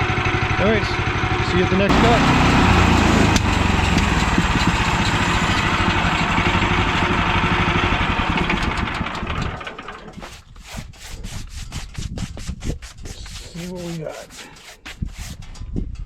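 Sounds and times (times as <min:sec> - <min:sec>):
sawmill engine running: 0:00.0 - 0:10.8
short scraping strokes: 0:01.9 - 0:07.6, 0:10.0 - 0:15.4.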